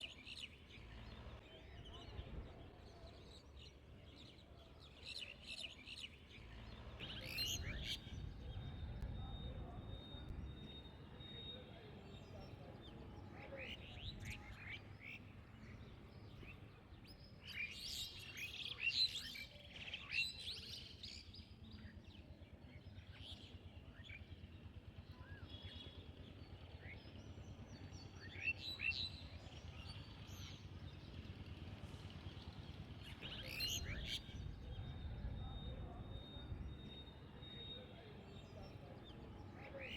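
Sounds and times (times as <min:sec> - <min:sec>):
songbirds chirping: 0:00.0 - 0:39.9.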